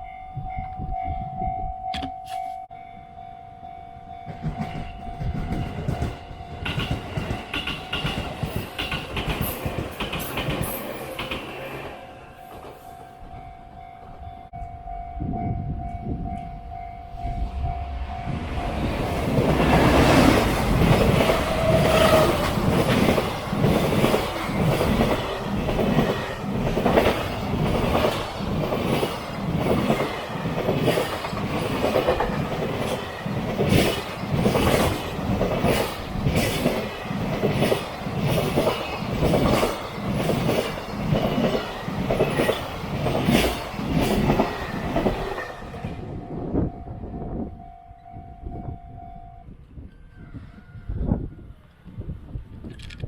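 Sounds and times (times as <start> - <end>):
train wheels clacking over rail joints: 4.3 - 11.6, 19.2 - 45.9.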